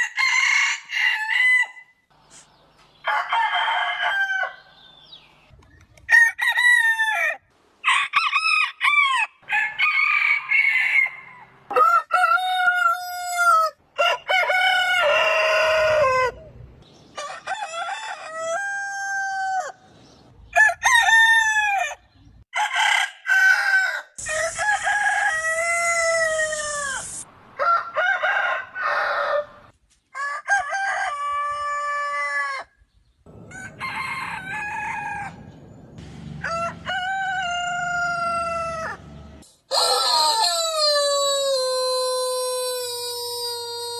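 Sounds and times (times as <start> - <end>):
roosters crowing: 0.0 - 1.9, 3.0 - 4.9, 6.1 - 19.9, 20.5 - 32.7, 33.3 - 43.9
hiss: 26.3 - 27.3.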